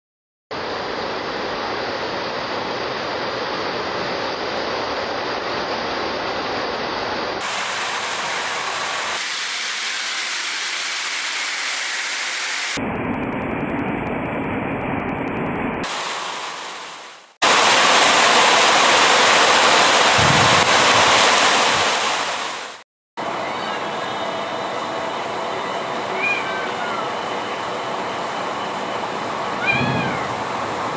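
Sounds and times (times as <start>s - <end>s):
steady rain: 0.5s - 12.8s, 14.8s - 22.8s.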